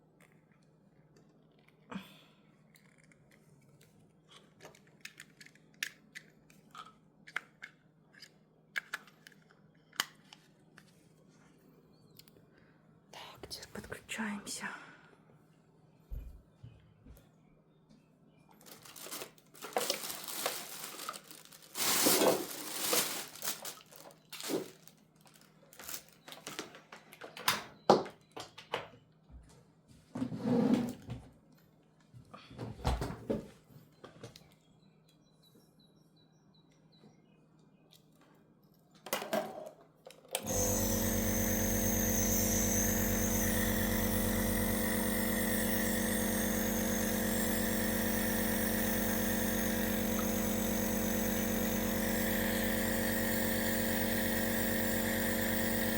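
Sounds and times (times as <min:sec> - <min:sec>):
plastic clicks and rustling: 0:02.7 - 0:11.0, 0:18.6 - 0:27.6
compressor humming: 0:40.4 - 0:55.9.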